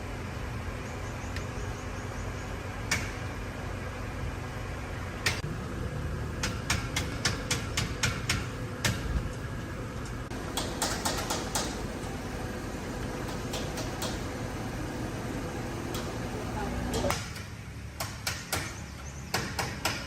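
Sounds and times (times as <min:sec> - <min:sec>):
steady low hum: 0:00.0 - 0:19.4.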